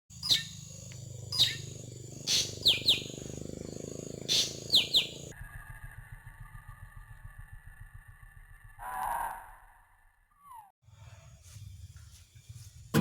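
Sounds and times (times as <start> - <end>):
steady low hum: 0.1 - 8.8
bird whistled calls: 0.2 - 0.6, 1.3 - 3.4, 4.3 - 5.3.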